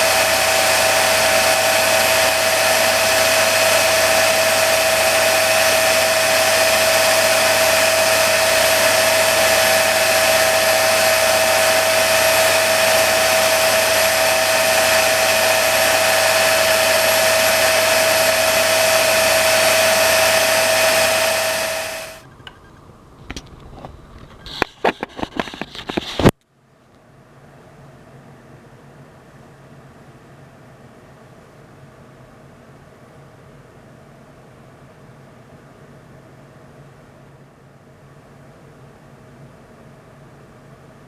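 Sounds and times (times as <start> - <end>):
electric grinder whining: 0.0 - 26.3.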